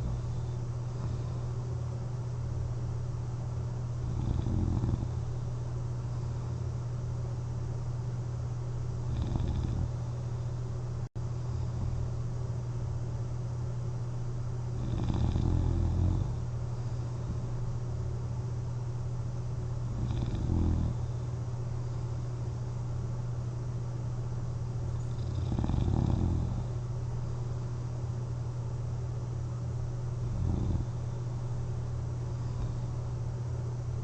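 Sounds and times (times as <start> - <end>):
low hum: 0.0 - 34.0
person snoring: 4.0 - 5.3, 9.0 - 10.0, 14.8 - 16.4, 19.8 - 21.2, 25.2 - 26.8, 30.3 - 31.1.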